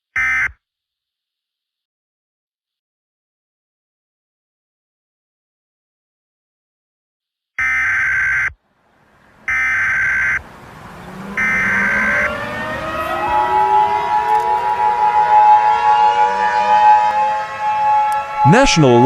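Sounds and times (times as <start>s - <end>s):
siren winding up: 9.5s - 19.0s.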